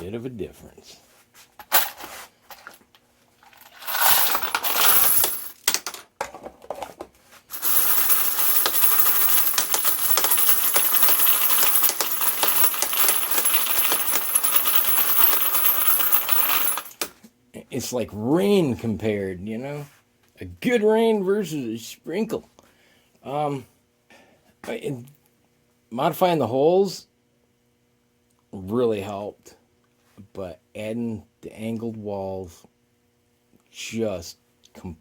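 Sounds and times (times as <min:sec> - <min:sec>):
brass cases rattling and clattering: 0:03.5 - 0:06.0, 0:07.5 - 0:17.1.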